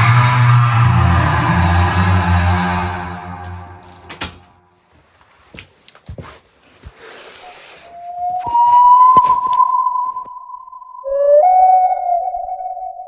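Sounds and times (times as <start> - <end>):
low many-toned drone: 0.0 - 4.6
clicks and knocks: 3.4 - 4.5
whistle-like high tone: 7.4 - 13.0.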